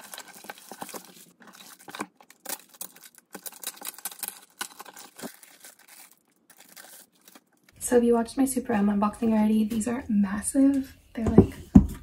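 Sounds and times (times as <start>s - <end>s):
packaging crinkling: 0.0s - 7.8s.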